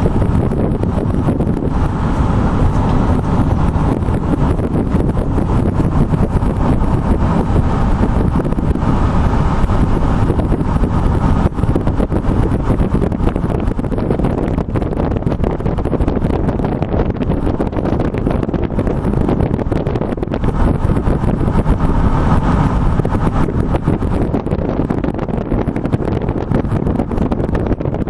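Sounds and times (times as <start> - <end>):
low rumble: 0.0 - 28.0
wind buffeting microphone: 0.0 - 28.0.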